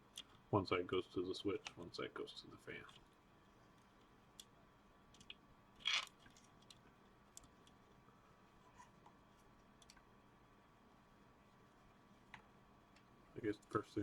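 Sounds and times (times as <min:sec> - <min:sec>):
light clicks of small parts: 0:06.0 - 0:07.8.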